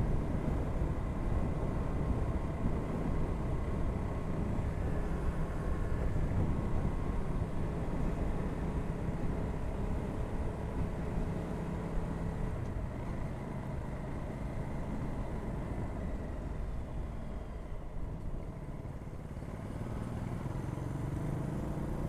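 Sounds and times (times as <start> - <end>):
road and wind noise: 0.0 - 22.0.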